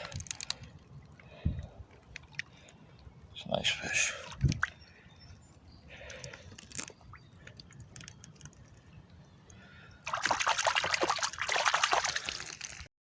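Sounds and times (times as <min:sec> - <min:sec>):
water dripping and trickling: 0:04.0 - 0:04.9, 0:06.0 - 0:12.9
fish splashing in water: 0:10.0 - 0:12.9.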